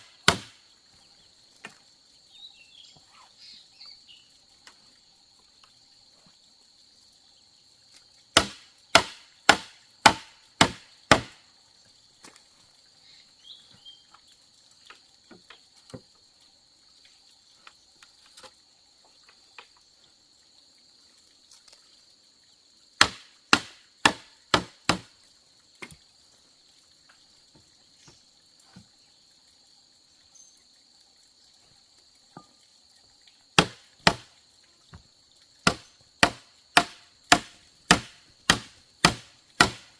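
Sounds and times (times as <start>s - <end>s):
bamboo being chopped: 0.0s - 0.6s, 8.3s - 11.4s, 23.0s - 25.1s, 25.8s - 26.0s, 33.6s - 34.3s, 35.6s - 39.9s
high insect drone: 0.0s - 39.9s.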